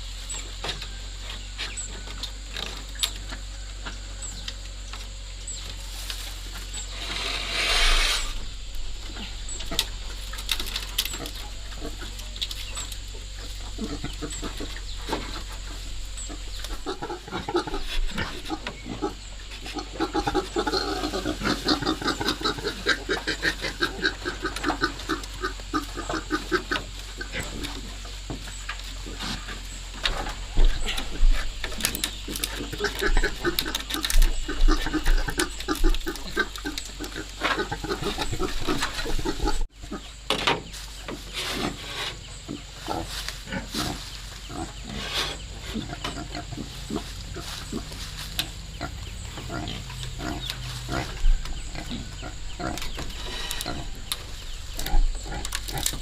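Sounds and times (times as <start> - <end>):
pigs grunting and squealing: 6.7 - 28.4, 29.0 - 40.2, 41.3 - 56.0.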